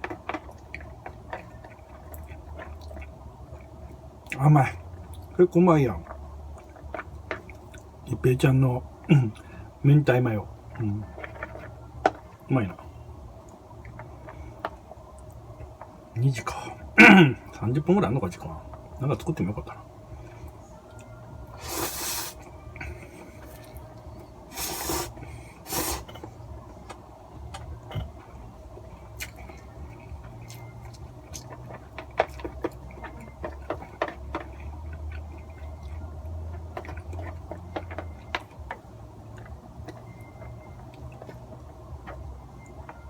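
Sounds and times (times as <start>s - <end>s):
chewing with small clicks: 0.0s - 8.2s, 10.4s - 21.6s, 22.4s - 43.0s
steady low hum: 0.0s - 43.0s
person slurping noodles: 21.6s - 22.4s, 24.5s - 26.2s.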